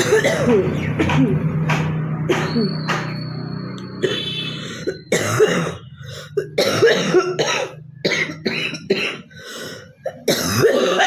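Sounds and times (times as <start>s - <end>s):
girl coughing: 0.0s - 1.4s, 4.9s - 9.4s, 10.1s - 11.0s.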